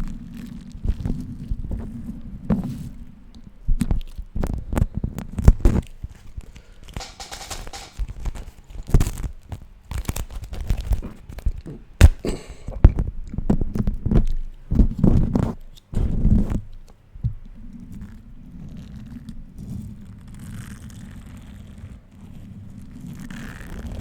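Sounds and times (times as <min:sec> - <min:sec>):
wax wrap crinkling and crackling: 0:00.0 - 0:24.0
sharp snap: 0:12.0 - 0:12.5.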